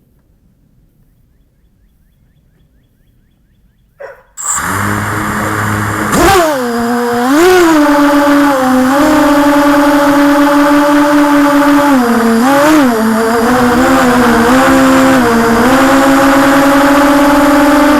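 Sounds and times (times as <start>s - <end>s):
quadcopter motors whining: 4.4s - 17.9s.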